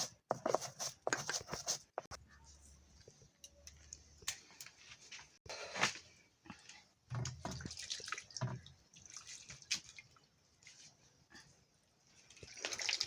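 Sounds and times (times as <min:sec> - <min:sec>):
water dripping and splashing: 0:07.1 - 0:11.0, 0:12.2 - 0:13.0.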